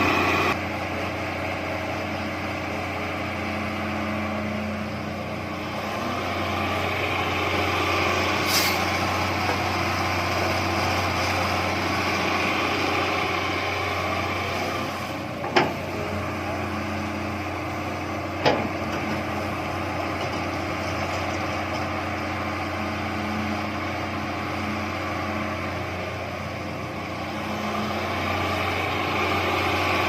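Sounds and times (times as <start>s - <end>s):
heavy diesel engine running: 0.0s - 30.0s
short hiss: 8.4s - 8.9s.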